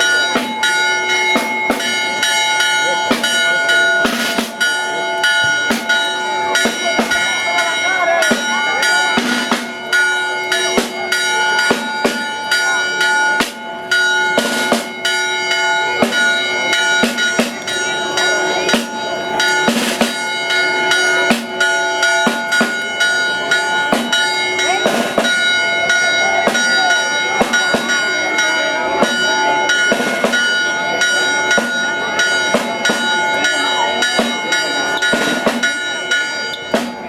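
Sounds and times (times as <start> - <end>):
church bells ringing: 0.0 - 37.0
faint crowd voices: 0.0 - 37.0.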